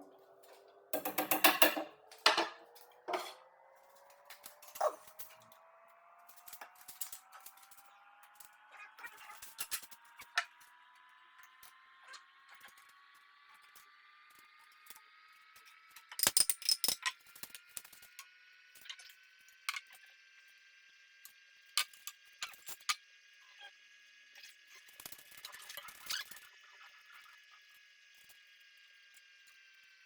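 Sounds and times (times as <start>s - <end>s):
sharp clicks and knocks: 1.0s - 3.4s.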